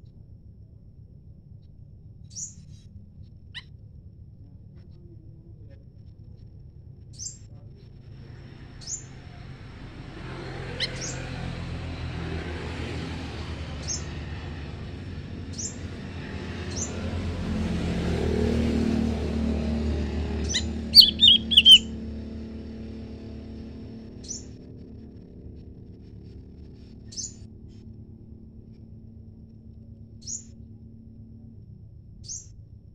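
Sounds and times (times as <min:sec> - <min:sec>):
passing vehicle rumble: 0:08.1 - 0:28.8
small birds chirping: 0:08.8 - 0:09.1, 0:15.5 - 0:15.9, 0:16.7 - 0:17.0, 0:20.3 - 0:22.0.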